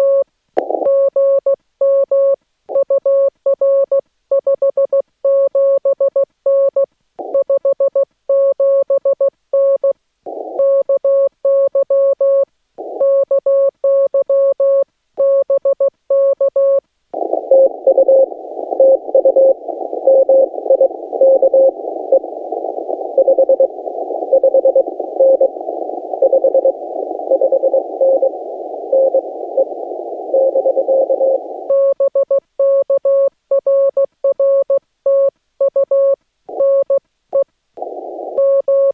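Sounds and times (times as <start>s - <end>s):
radio band hiss: 17.2s - 31.7s, 37.8s - 38.5s
morse code beeping tone: 23.2s - 25.6s, 26.2s - 28.3s.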